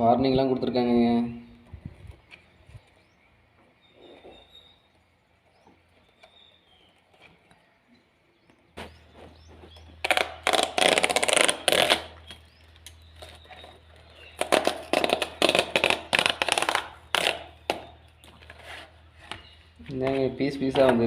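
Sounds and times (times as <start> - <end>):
packaging ripping and crackling: 10.0 - 18.6.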